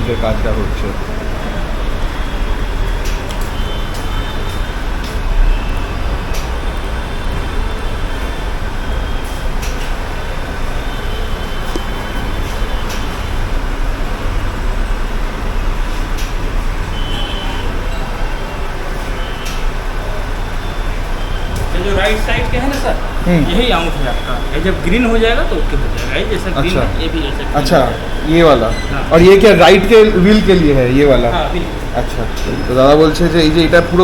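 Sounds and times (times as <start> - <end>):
workshop and traffic rumble: 0.0 - 34.0.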